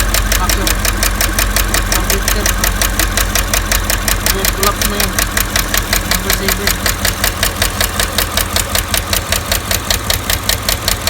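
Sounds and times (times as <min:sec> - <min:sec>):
engine idling with tapping knock: 0:00.0 - 0:11.0.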